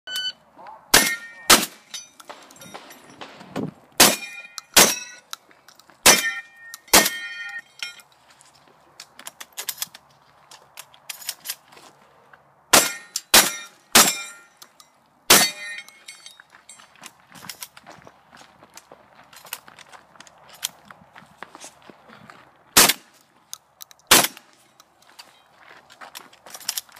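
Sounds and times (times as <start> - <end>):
shotgun shots: 0.9 - 5.0, 22.8 - 23.1, 24.1 - 24.4
metallic ring: 1.0 - 3.2, 4.2 - 5.3, 6.1 - 8.1, 12.8 - 16.9.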